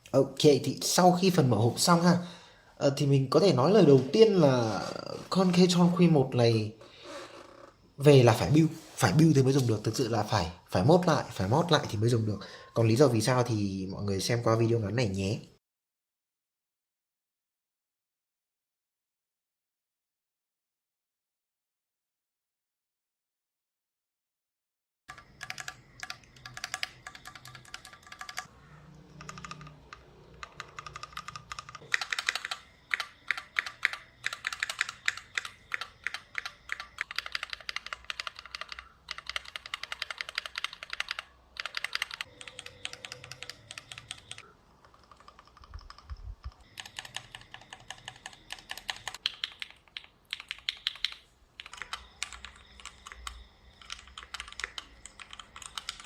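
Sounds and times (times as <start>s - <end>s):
mechanical keyboard typing: 25.1s - 28.5s, 29.1s - 56.0s.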